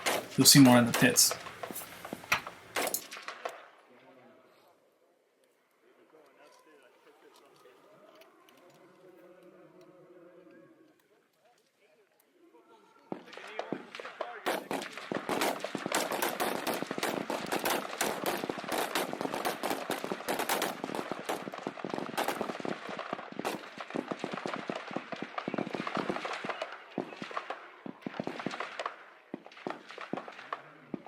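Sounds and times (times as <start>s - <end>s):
rapid rifle gunfire: 0.0s - 3.6s, 13.2s - 31.0s.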